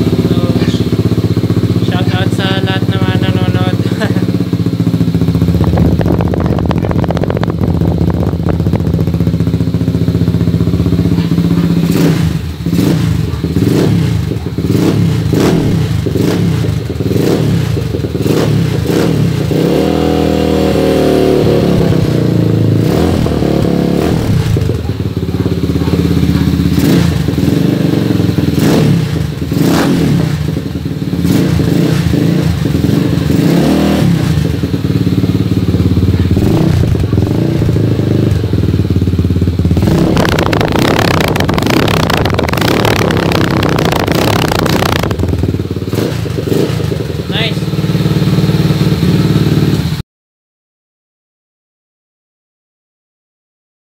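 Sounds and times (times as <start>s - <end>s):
motorcycle engine revving: 0.0s - 50.0s
exhaust crackles and pops: 5.6s - 9.3s, 39.5s - 47.5s.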